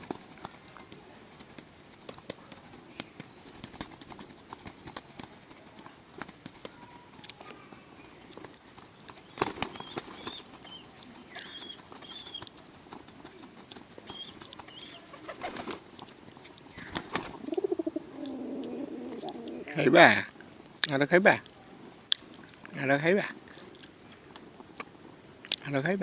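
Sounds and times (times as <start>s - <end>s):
rustle: 0.0s - 26.0s
pigeon pecking clicks: 8.3s - 19.6s.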